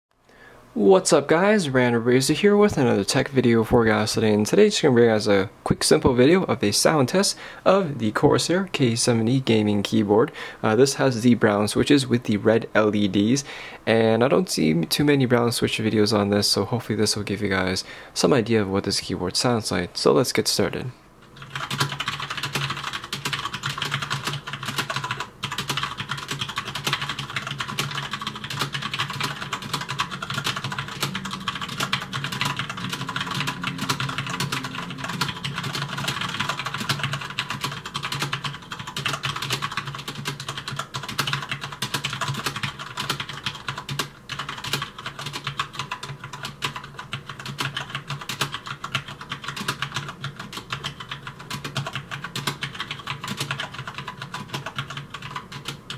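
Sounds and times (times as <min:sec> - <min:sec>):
mechanical keyboard typing: 0:21.4 - 0:55.9.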